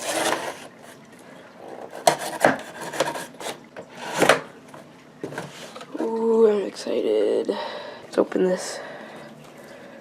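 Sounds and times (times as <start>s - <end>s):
cardboard box scraping and ripping: 0.0s - 0.7s.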